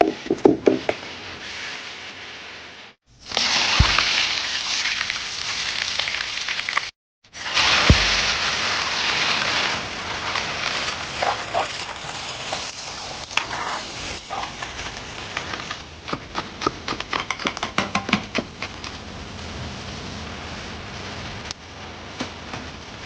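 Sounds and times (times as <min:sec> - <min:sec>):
food sizzling in a pan: 0:01.4 - 0:15.4
frying clicks and crackles: 0:03.2 - 0:23.0.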